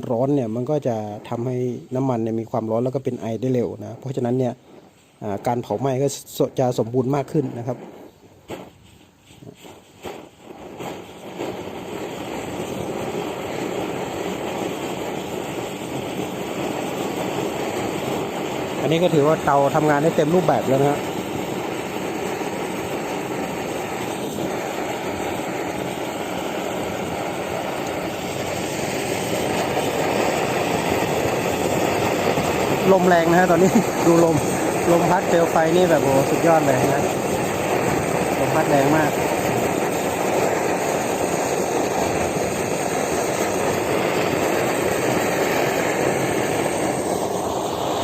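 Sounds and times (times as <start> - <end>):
camping stove burner rushing: 0.0 - 48.0
strong wind: 10.1 - 48.0.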